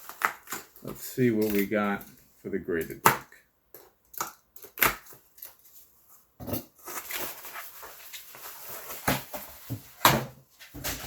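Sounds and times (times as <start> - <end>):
packaging rustling: 0.0 - 1.9, 4.8 - 10.0.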